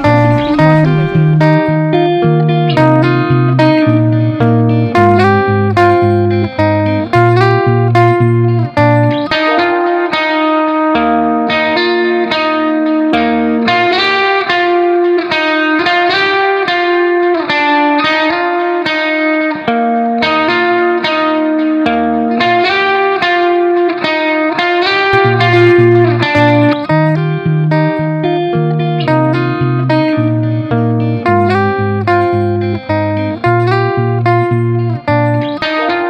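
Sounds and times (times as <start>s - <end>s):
bass line: 0.0s - 9.3s, 25.2s - 35.6s
plucked guitar tune: 0.0s - 36.0s.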